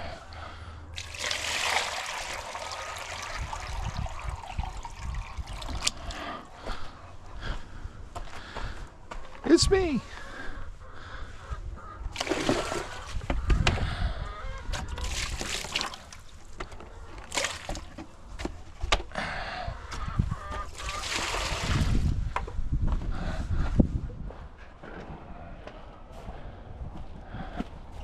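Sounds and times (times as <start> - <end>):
water splashing: 1.0 - 6.6, 12.1 - 13.3, 14.9 - 16.6, 17.2 - 18.0, 20.7 - 22.0
chickens calling: 5.0 - 16.1, 19.6 - 22.0
ducks calling: 6.1 - 15.0, 19.7 - 21.4.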